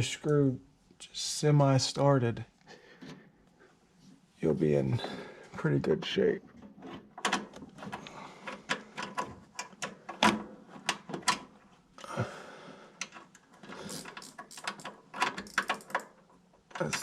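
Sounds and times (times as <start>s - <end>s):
small clicks and metallic knocks: 6.5s - 12.1s, 13.0s - 17.0s.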